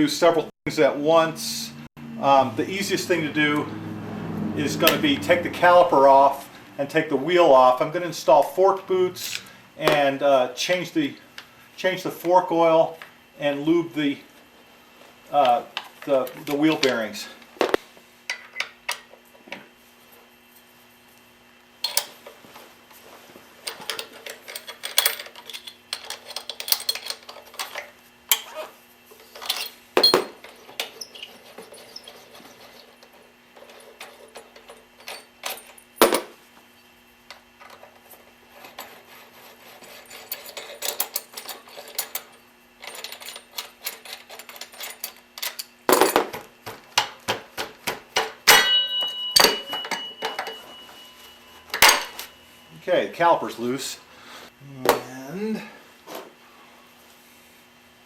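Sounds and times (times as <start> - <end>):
metal tools clinking: 9.2 - 10.1, 21.8 - 22.3, 23.6 - 28.6, 29.2 - 36.2, 39.8 - 46.4, 48.2 - 52.4
ringing metallic clicks: 48.2 - 52.3.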